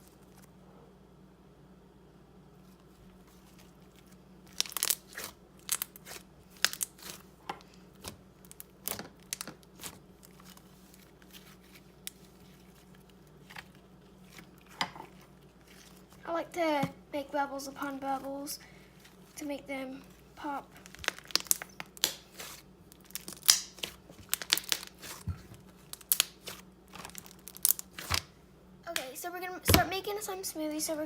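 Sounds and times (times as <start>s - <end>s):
slime squishing and popping: 3.8s - 16.2s, 20.7s - 28.3s.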